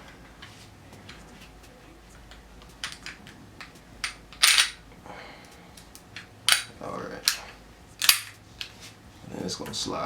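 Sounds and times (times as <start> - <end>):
pistol metal clicks and clacks: 6.2 - 7.4, 8.0 - 8.4.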